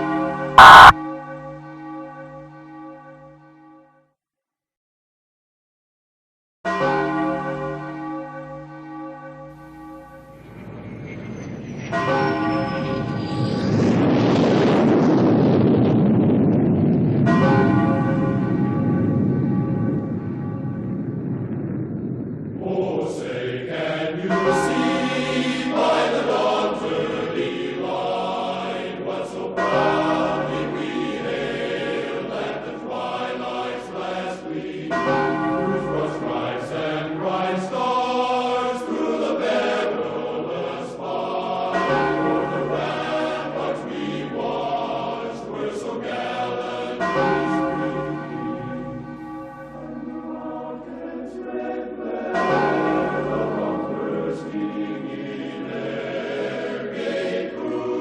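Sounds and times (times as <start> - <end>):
solemn choral music: 0.0 - 3.9, 6.7 - 14.2, 17.3 - 21.3, 22.6 - 58.0
choir singing: 0.6 - 1.0, 22.6 - 58.0
church bells ringing: 6.7 - 13.6, 17.3 - 20.8, 24.2 - 27.0, 29.5 - 31.5, 34.8 - 37.3, 41.7 - 44.3, 46.5 - 50.5, 52.3 - 55.0.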